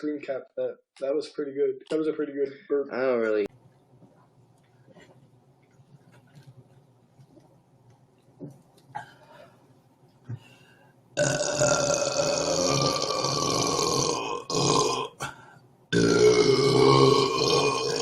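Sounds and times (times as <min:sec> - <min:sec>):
man burping: 0:11.2 - 0:18.0.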